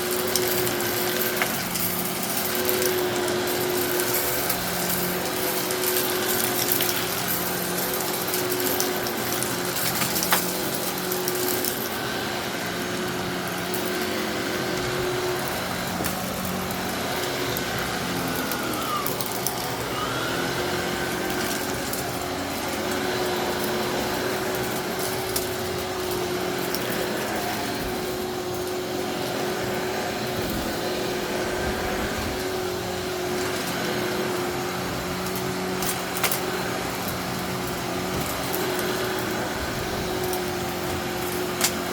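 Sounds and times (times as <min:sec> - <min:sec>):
rocks rattling in vacuum: 0:00.0 - 0:28.9
vacuum motor humming: 0:00.0 - 0:41.9.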